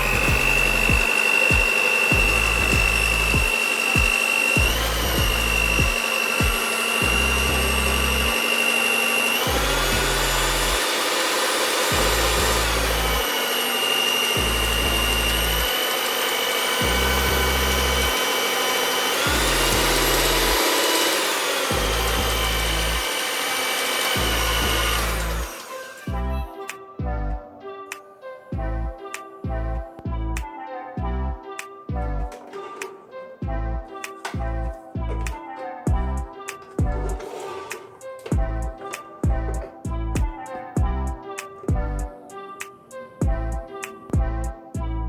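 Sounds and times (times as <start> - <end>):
background music with bass: 0.0 - 8.6, 9.5 - 10.8, 11.9 - 13.3, 14.4 - 15.7, 16.8 - 18.2, 19.3 - 20.6, 21.7 - 23.0, 24.2 - 25.5, 26.1 - 27.8, 28.5 - 32.5, 33.4 - 37.3, 38.2 - 42.4, 43.2 - 45.0
stand mixer motor whine: 0.0 - 26.5, 32.2 - 42.2.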